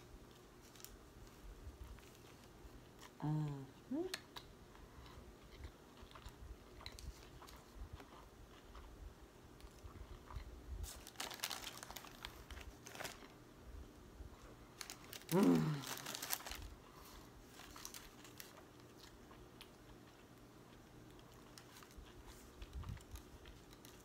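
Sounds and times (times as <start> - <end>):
crunching and chewing: 0.2 - 3.2, 4.1 - 13.4, 14.4 - 24.0
paper crinkling: 10.8 - 13.4, 14.8 - 16.7, 17.5 - 19.1
short falling vocal sound: 15.3 - 15.8.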